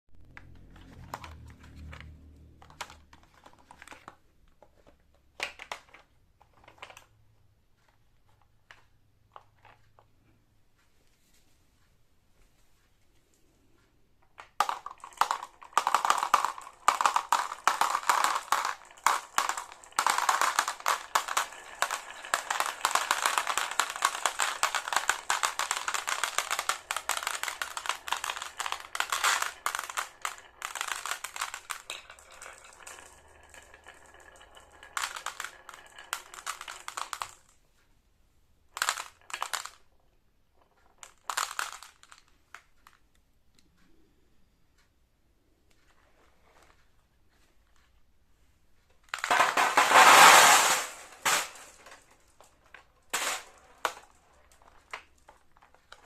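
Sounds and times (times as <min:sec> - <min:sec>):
marbles clattering down track: 0:00.3 - 0:04.2, 0:14.4 - 0:37.6, 0:38.7 - 0:40.0, 0:40.8 - 0:43.0, 0:49.0 - 0:56.0.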